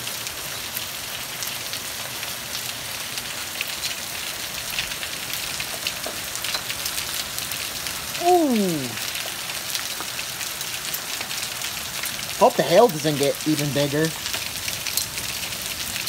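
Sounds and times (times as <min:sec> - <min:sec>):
rain hissing: 0:00.0 - 0:16.0
hailstones clicking on surfaces: 0:04.6 - 0:08.1, 0:09.0 - 0:16.0.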